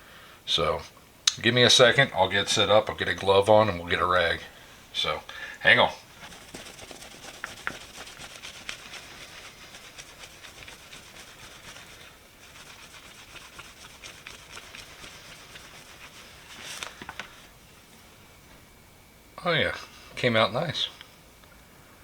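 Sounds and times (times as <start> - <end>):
rag rubbing scratchily: 6.1 - 17.5.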